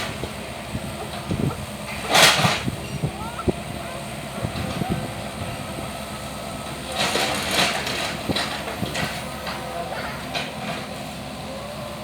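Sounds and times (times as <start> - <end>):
rough scraping and crackling: 0.0 - 4.8
excavator engine running: 0.0 - 12.0.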